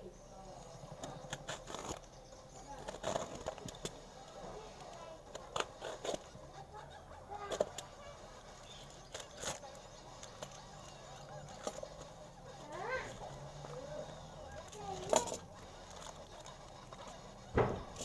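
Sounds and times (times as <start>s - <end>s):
packaging clicks and knocks: 17.6s - 18.0s.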